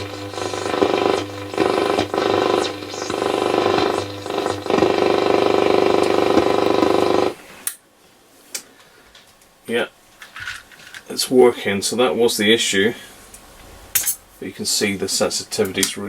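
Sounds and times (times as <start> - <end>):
radio broadcast with noise: 0.0 - 7.4.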